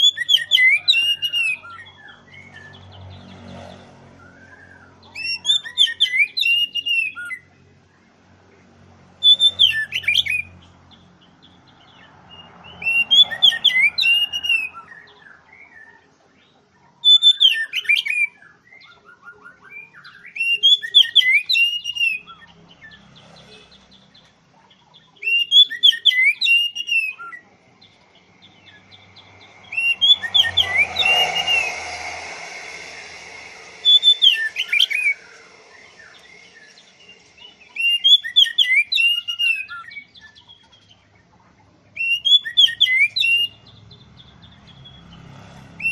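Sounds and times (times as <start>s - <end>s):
bird singing whistled phrases: 0.0s - 2.7s, 4.3s - 7.5s, 9.2s - 10.5s, 12.4s - 16.0s, 17.0s - 22.5s, 25.2s - 27.4s, 29.6s - 40.6s, 42.0s - 43.7s
steady tone: 28.9s - 38.3s
rushing noise: 28.9s - 38.4s.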